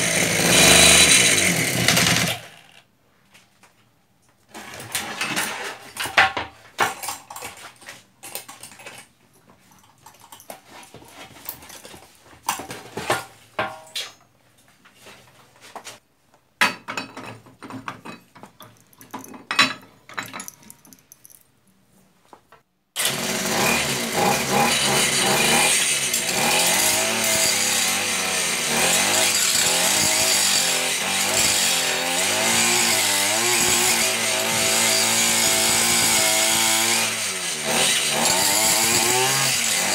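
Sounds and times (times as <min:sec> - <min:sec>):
two-stroke engine running: 0:00.0 - 0:02.3.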